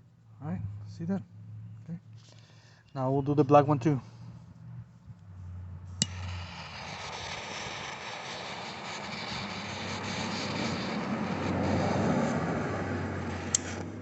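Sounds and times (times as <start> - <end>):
steady rushing noise: 3.6 - 14.0
lighter click: 13.5 - 13.8.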